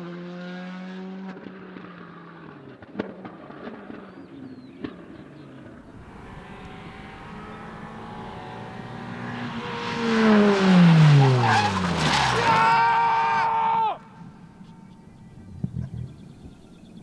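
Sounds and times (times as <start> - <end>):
rally car engine passing fast: 0.0 - 4.0, 5.6 - 15.4
faint engine: 0.0 - 17.0
sharp cracks: 6.0 - 14.8.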